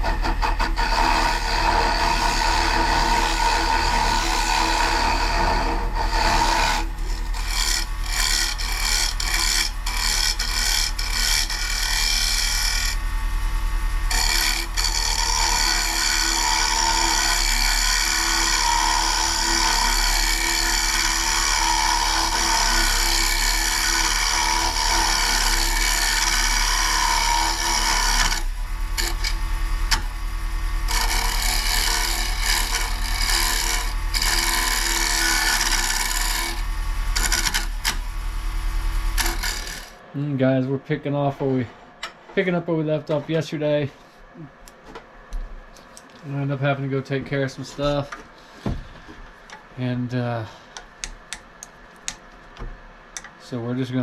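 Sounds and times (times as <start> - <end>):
turning tool scraping wood: 0.0 - 13.1, 14.0 - 40.0, 45.7 - 52.2
lathe motor hum: 0.0 - 40.0.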